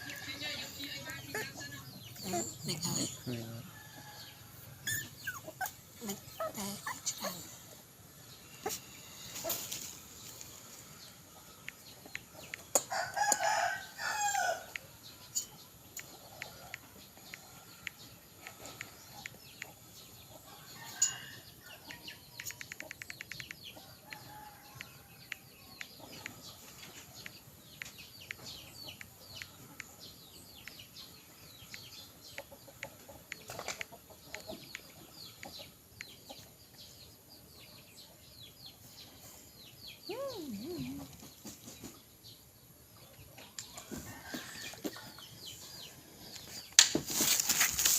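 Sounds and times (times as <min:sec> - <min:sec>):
faint clicks and chirps: 0:09.8 - 0:13.5, 0:14.7 - 0:19.9, 0:22.3 - 0:30.0, 0:30.6 - 0:31.0, 0:31.6 - 0:36.8
rooster crowing: 0:12.9 - 0:14.8.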